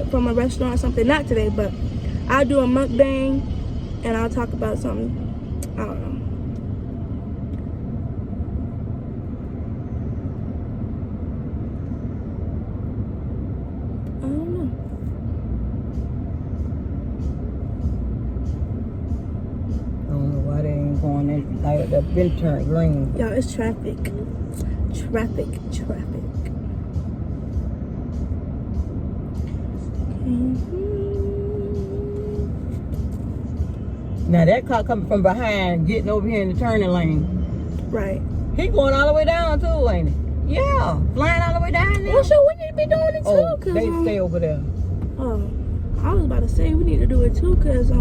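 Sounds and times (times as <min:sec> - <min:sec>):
car interior engine and road noise: 0:00.0 - 0:48.0.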